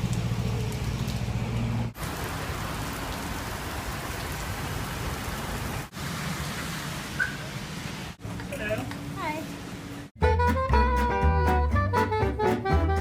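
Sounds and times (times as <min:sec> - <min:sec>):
steady rain falling: 0:00.0 - 0:09.7.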